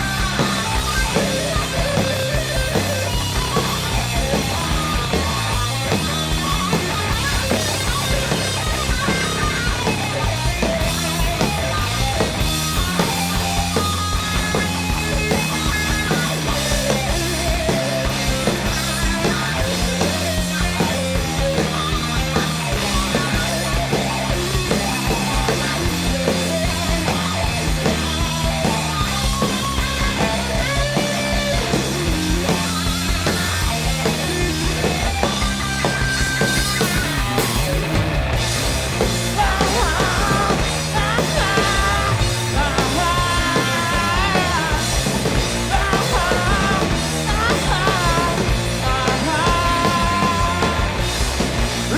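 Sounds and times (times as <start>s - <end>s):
bass line: 0.0s - 51.9s
loud rock music: 0.0s - 51.9s.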